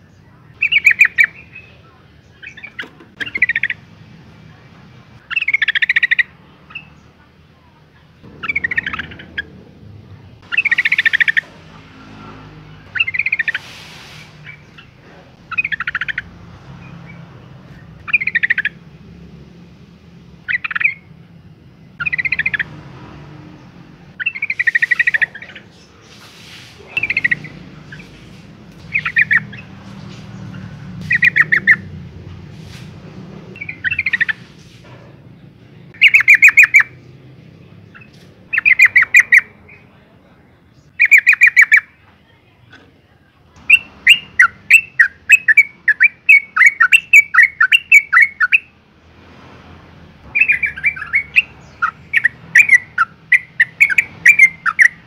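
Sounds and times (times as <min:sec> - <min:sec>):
bird chattering calls: 0:00.5 - 0:03.9, 0:05.2 - 0:07.2, 0:08.2 - 0:09.8, 0:10.4 - 0:19.2, 0:20.4 - 0:21.2, 0:21.9 - 0:22.9, 0:23.5 - 0:32.1, 0:32.7 - 0:34.7, 0:36.0 - 0:37.2, 0:37.8 - 0:40.1, 0:40.8 - 0:42.0, 0:43.6 - 0:48.7, 0:50.3 - 0:55.0.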